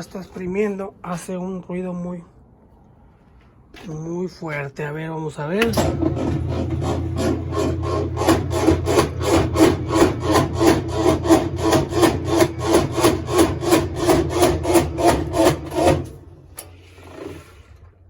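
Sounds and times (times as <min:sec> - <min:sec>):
washer rhythmic grinding rasp: 0:05.6 - 0:17.9
washer motor hum: 0:05.6 - 0:18.0.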